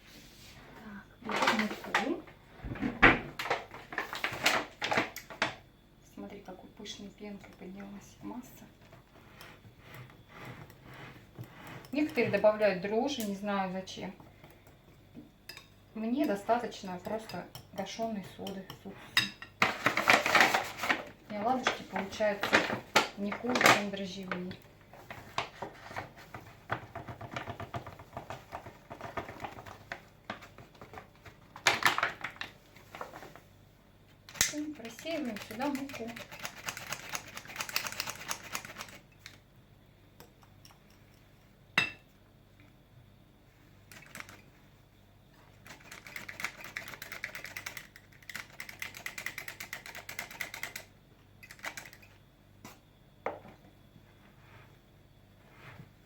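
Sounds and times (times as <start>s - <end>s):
utensils tapping against a bowl: 15.4s - 19.8s.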